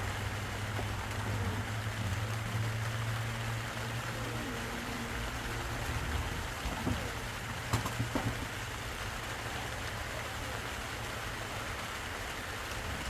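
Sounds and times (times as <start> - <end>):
steady rain falling: 0.0 - 13.0
short knocks: 6.6 - 8.6.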